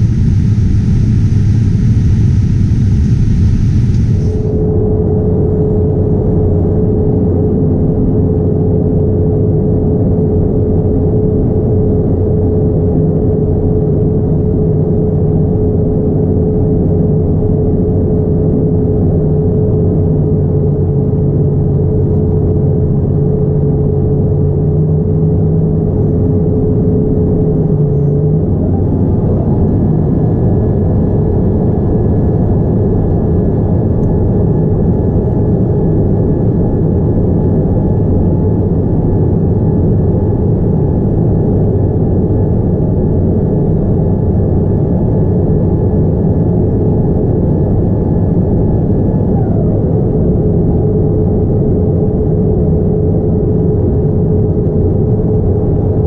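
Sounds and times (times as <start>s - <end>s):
faint high whine: 0.0s - 6.4s
steady hum: 0.0s - 6.8s
airliner cabin rumble: 0.0s - 6.9s, 21.0s - 56.0s.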